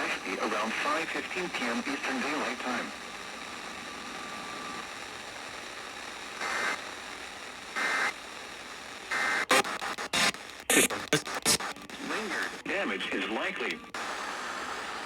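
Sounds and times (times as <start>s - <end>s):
radio static hiss: 0.0s - 15.0s
loud crackles: 9.0s - 12.6s
data burst tones: 9.2s - 11.6s.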